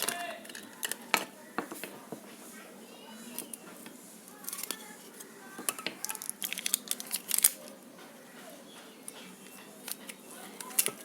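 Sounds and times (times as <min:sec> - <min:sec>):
packaging clicks and crinkles: 0:05.7 - 0:07.8.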